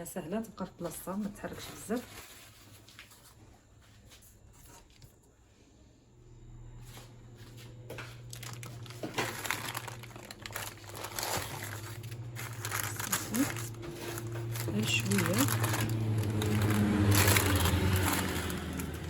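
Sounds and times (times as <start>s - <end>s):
wrapping crinkling and rustling: 0.8s - 5.2s, 7.9s - 19.0s
low steady hum: 5.6s - 19.0s.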